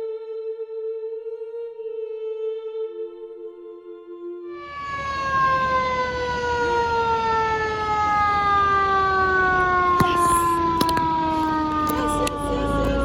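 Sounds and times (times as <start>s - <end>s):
fire engine siren winding down: 4.5s - 9.9s.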